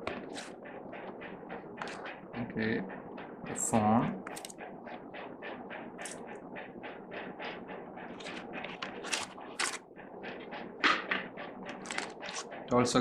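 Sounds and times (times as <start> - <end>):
packaging rustling and scraping: 8.2 - 9.8, 11.7 - 12.5.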